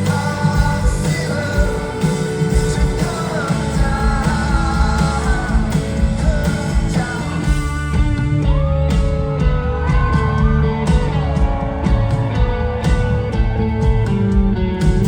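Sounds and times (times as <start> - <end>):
person singing: 0.0 - 7.8
live rock band playing: 0.0 - 15.0.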